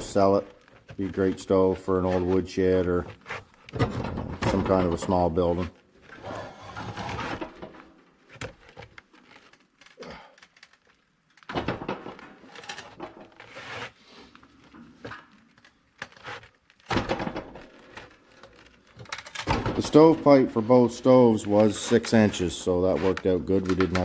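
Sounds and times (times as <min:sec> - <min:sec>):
scraping: 0:00.0 - 0:24.0.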